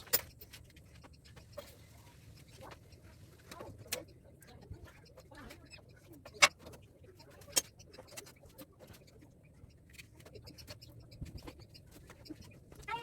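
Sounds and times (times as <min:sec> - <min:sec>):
tools tapping on metal and plastic: 0:05.5 - 0:09.0.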